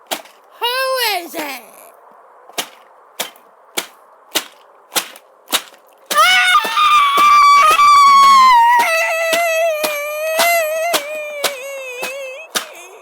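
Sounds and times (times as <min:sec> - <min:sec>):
high held wail: 0:06.2 - 0:12.9.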